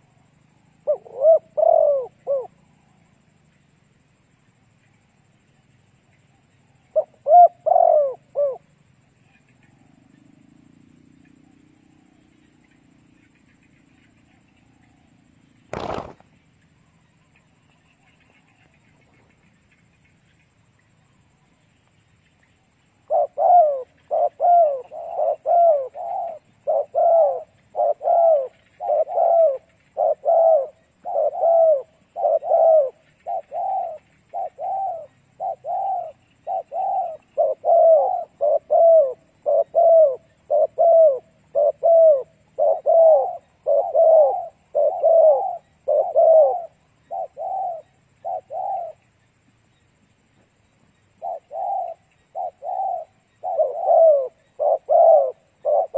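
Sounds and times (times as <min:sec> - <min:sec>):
dove cooing: 0:00.0 - 0:02.6, 0:06.9 - 0:08.7, 0:15.7 - 0:16.2, 0:23.0 - 0:49.1, 0:51.2 - 0:55.9.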